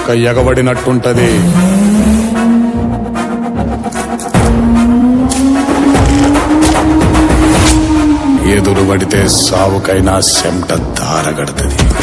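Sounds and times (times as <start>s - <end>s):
rising held low note: 4.4s - 9.9s.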